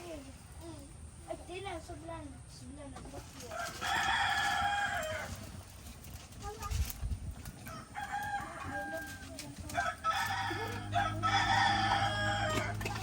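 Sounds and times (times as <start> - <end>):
rooster crowing: 3.6 - 5.5, 7.6 - 13.0.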